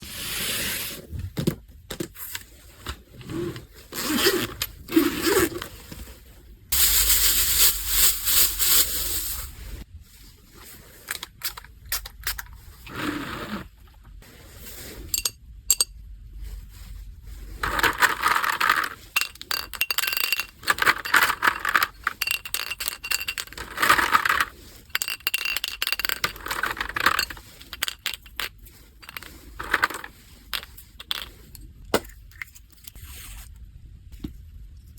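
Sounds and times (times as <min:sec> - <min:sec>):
packaging rustling and scraping: 0:02.2 - 0:09.9, 0:20.1 - 0:31.7
small items clicking and clinking: 0:17.6 - 0:32.9.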